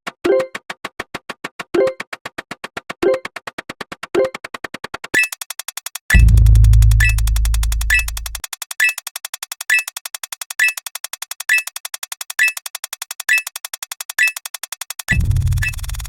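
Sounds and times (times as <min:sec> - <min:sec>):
rapid synthetic ticks: 0:00.2 - 0:16.0
high electronic beep: 0:05.2 - 0:05.4, 0:06.1 - 0:09.0, 0:10.6 - 0:10.8, 0:15.1 - 0:16.0
low synth drone: 0:06.1 - 0:08.4, 0:15.1 - 0:16.0.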